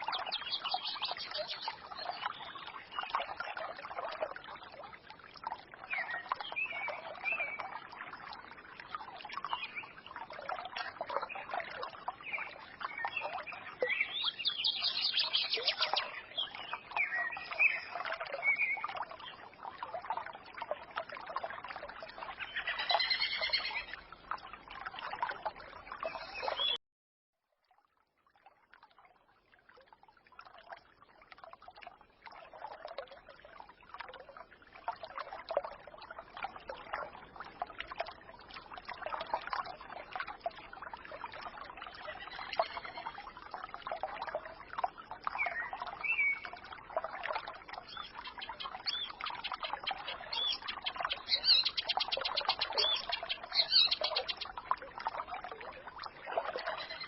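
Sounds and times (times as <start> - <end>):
small birds chirping: 0.0 - 3.6, 12.2 - 19.4, 22.2 - 23.9, 47.8 - 54.6
stream trickling and babbling: 0.0 - 26.8, 27.4 - 57.0.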